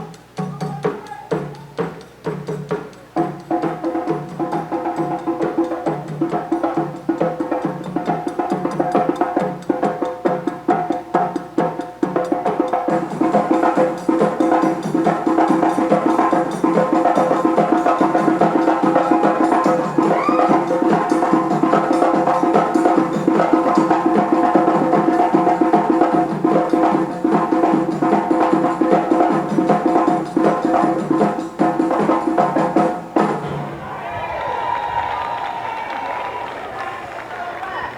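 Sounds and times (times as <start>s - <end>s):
fast drumming: 0.0s - 36.5s.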